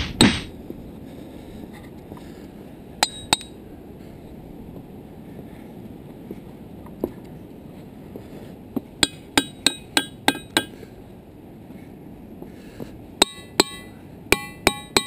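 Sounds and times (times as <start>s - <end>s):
hammer striking ringing rocks: 0.0s - 0.5s, 9.0s - 10.8s, 13.2s - 15.0s.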